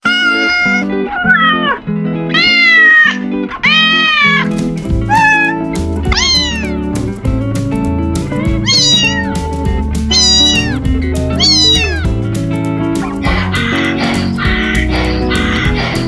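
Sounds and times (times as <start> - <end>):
cat meowing: 0.0 - 4.5, 5.1 - 6.8, 8.6 - 9.3, 10.1 - 10.8, 11.4 - 12.1
music with a steady beat: 4.5 - 16.0.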